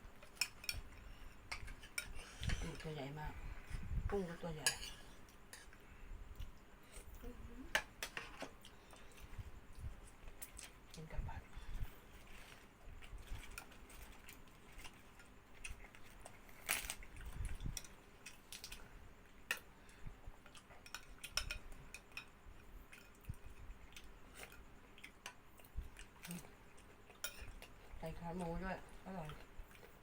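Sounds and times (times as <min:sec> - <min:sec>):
cutlery clinking against dishes: 0:20.8 - 0:22.3, 0:27.2 - 0:27.7
person chewing: 0:22.9 - 0:27.7.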